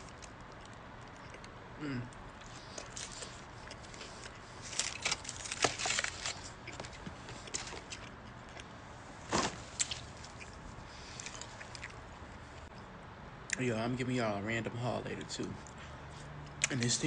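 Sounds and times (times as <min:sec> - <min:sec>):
person chewing food: 0:00.0 - 0:08.8, 0:09.8 - 0:12.7.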